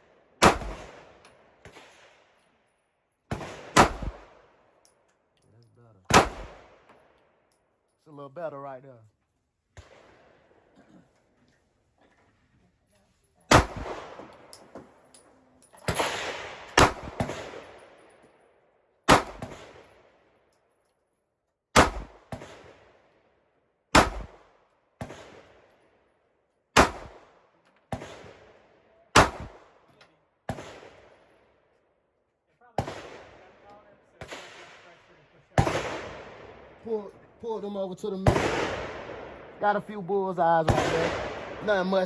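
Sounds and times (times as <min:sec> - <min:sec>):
handgun shots with echo: 0:03.3 - 0:04.3, 0:13.5 - 0:14.8, 0:15.8 - 0:17.9, 0:19.1 - 0:19.8, 0:21.8 - 0:22.6, 0:24.0 - 0:24.4, 0:26.8 - 0:27.2, 0:29.2 - 0:29.7.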